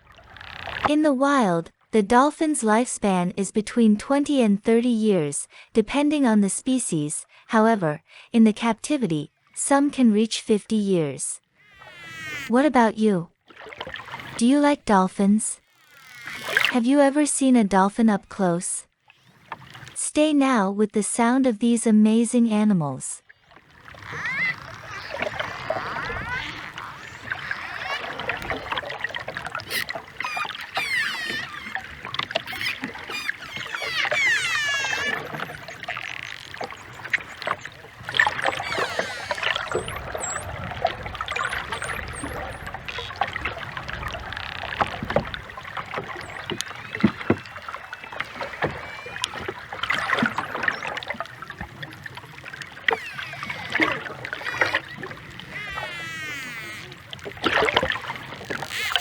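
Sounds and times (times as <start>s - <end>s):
buzzing pulsed calls: 11.4s - 12.6s, 15.6s - 16.8s, 23.3s - 59.0s
dolphin whistles: 11.5s - 12.5s, 23.9s - 43.2s, 46.2s - 51.1s, 52.8s - 57.0s.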